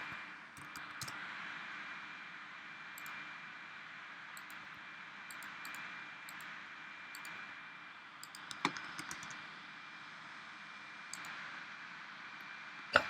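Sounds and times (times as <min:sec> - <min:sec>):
computer mouse clicks: 0:00.6 - 0:01.2, 0:03.0 - 0:03.2, 0:04.4 - 0:04.6, 0:05.3 - 0:06.5, 0:07.1 - 0:07.4, 0:08.2 - 0:09.4, 0:11.1 - 0:11.4.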